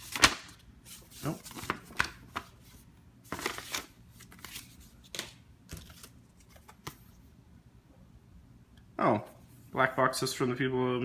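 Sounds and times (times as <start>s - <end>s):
paper packaging rustling: 0.0s - 7.1s.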